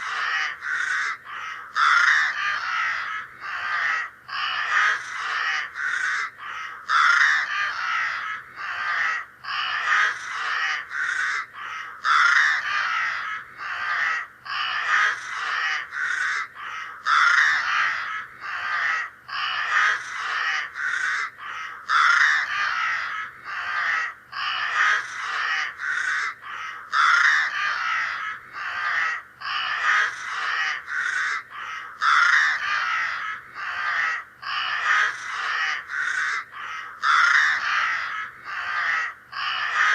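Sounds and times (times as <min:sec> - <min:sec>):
crows cawing: 0:00.0 - 0:39.9.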